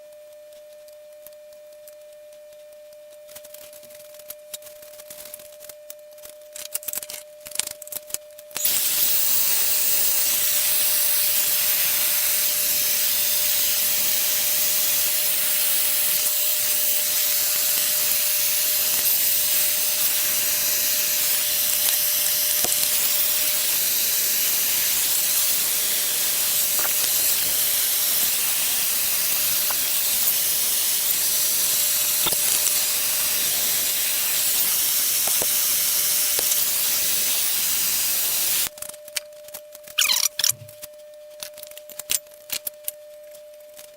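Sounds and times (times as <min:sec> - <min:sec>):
gas torch hissing: 0:08.6 - 0:38.7.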